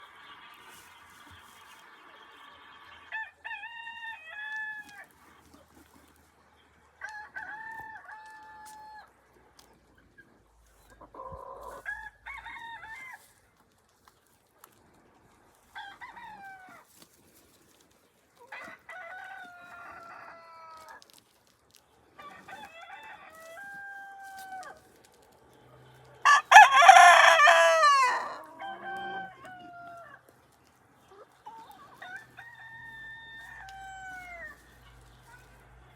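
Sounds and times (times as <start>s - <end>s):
rooster crowing: 26.2s - 30.2s.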